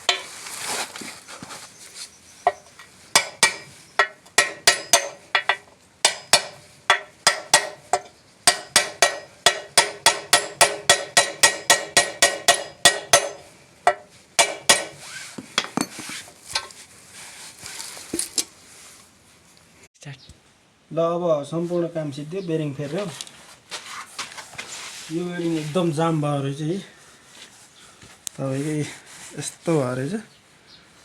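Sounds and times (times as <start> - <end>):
hammer blows on metal: 2.5 - 15.9.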